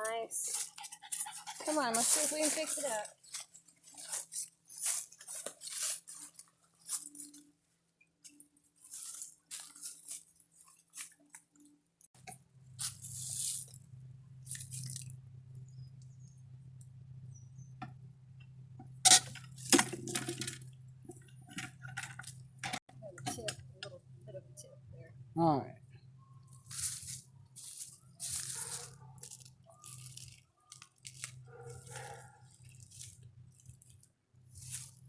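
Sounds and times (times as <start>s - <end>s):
low steady hum: 12.2s - 35.0s
container rustling and clicking: 18.8s - 23.7s, 26.8s - 35.0s.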